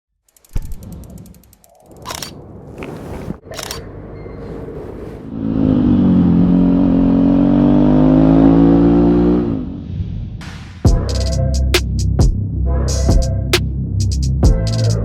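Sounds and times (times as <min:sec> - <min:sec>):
motorcycle engine revving: 0:05.2 - 0:10.0.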